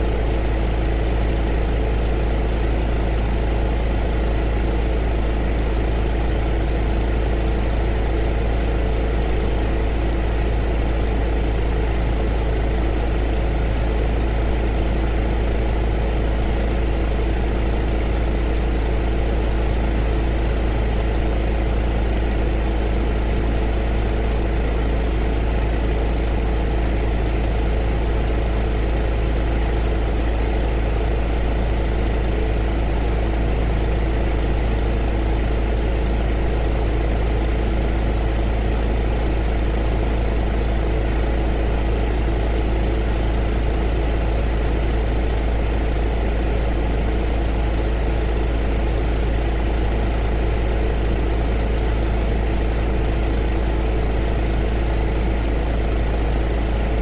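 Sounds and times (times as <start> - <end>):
heater whirring: 0.0 - 57.0.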